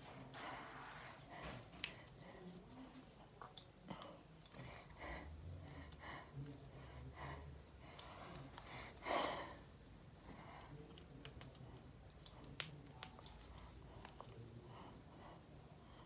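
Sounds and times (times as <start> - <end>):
hands rustling and clicking hair tool: 0.0 - 5.0, 9.8 - 14.7.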